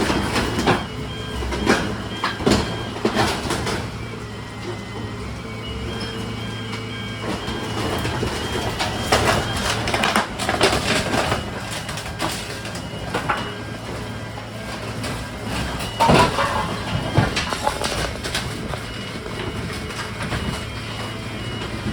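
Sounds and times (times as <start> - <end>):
garbage truck engine running: 0.0 - 21.9
metal clanks and bangs: 14.7 - 20.8.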